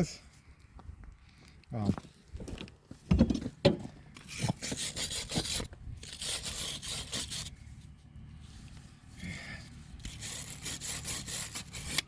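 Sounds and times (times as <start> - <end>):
hand tool scraping rust: 3.7 - 7.8, 8.6 - 12.0.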